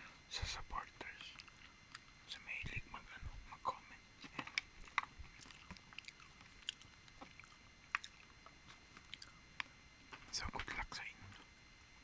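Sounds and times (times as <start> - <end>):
chewing with mouth clicks: 1.0 - 2.3, 4.2 - 9.8.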